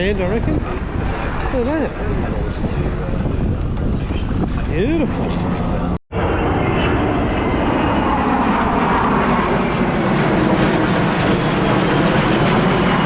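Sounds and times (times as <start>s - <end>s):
airplane engine noise: 0.0s - 13.0s.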